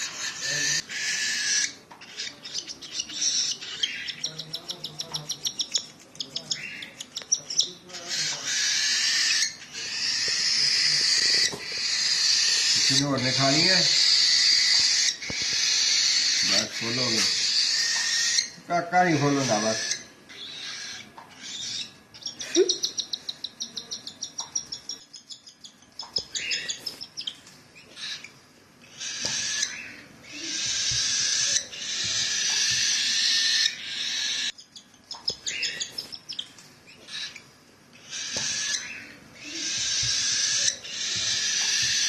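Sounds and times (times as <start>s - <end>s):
harsh hissing begging calls: 0.0s - 2.4s, 7.8s - 21.8s, 28.9s - 34.5s, 38.0s - 42.0s
chicks chirping: 0.0s - 37.4s, 38.0s - 42.0s.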